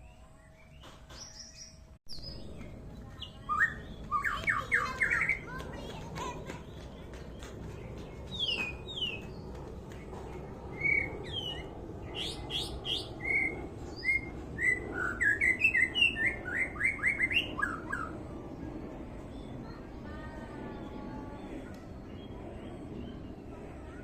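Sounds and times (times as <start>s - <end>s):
bird singing whistled notes: 0.0s - 5.4s, 10.7s - 18.2s.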